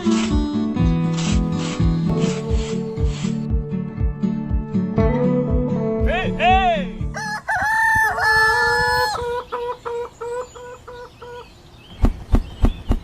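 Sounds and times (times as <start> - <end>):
rooster crowing: 7.2 - 10.4.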